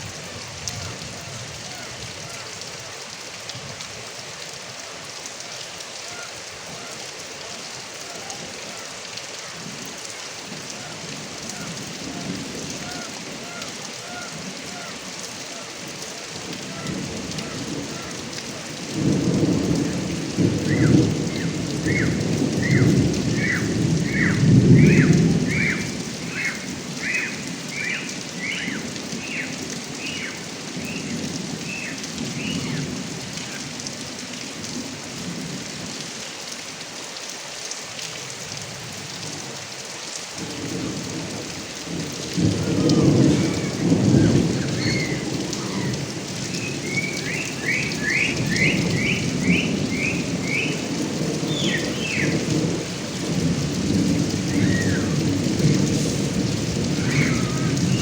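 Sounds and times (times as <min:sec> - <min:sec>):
rain running off gutter spout: 0:00.0 - 0:58.0
thunder rumbling: 0:16.6 - 0:27.8, 0:41.9 - 0:58.0.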